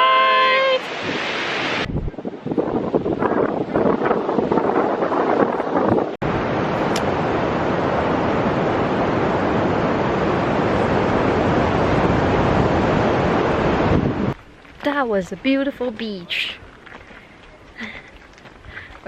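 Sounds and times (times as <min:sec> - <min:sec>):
surf rushing at shore: 0:00.0 - 0:14.4
wind on microphone: 0:00.6 - 0:14.4.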